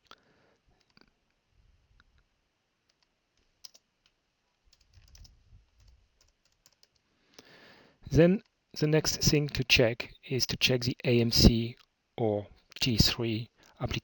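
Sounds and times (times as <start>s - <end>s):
keyboard and mouse clicks: 2.8s - 7.0s.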